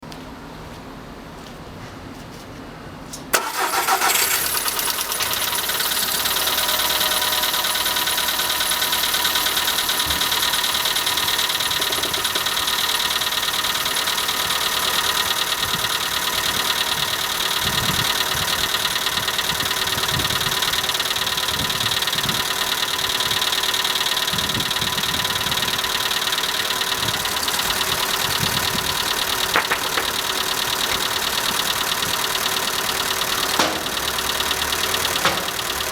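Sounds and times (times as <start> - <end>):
car engine starting and idling: 3.3 - 35.9
valve lifters ticking: 25.8 - 35.9.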